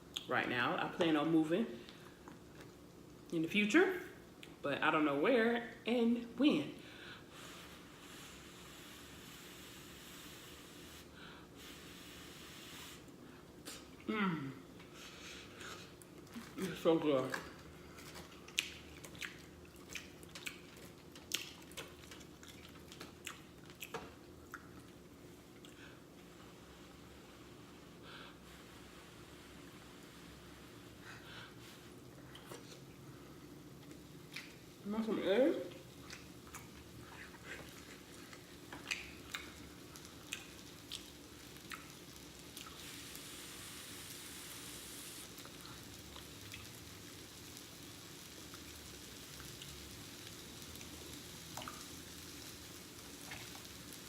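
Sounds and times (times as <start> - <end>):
steady hiss: 6.7 - 13.9, 25.8 - 32.1, 32.8 - 54.0
person chewing and lip smacking: 18.0 - 25.8, 36.0 - 39.6, 40.2 - 42.0
wet mouth clicks while chewing: 38.3 - 39.5.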